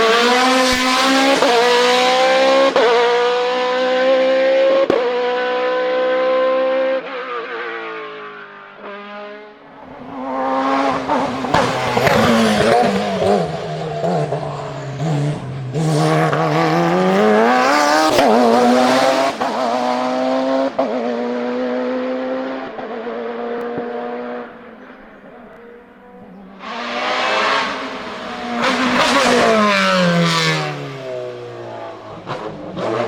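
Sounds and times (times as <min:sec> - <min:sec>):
racing car engine at high revs: 0:00.0 - 0:33.0.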